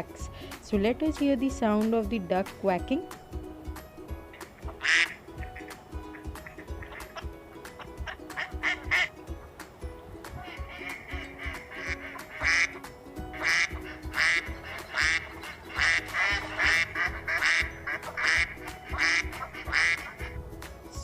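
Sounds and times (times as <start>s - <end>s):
light background music: 0.0s - 21.0s
duck quacking: 4.6s - 7.3s, 7.9s - 9.1s, 10.4s - 20.4s.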